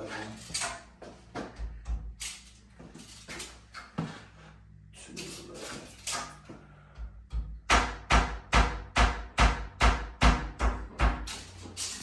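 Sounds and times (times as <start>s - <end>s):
hammer strikes with heavy thuds: 7.1s - 11.3s.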